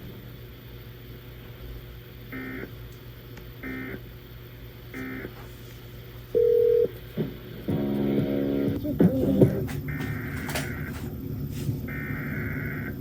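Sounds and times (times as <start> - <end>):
music: 7.2 - 9.7.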